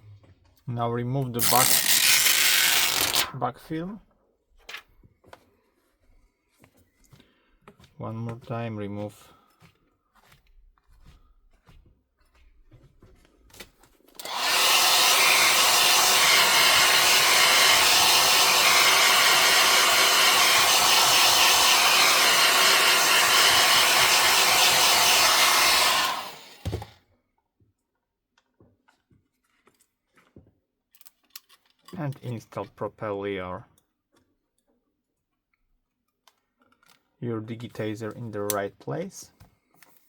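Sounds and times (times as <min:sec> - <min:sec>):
electric air blower running: 0:01.4 - 0:03.3, 0:14.2 - 0:26.9.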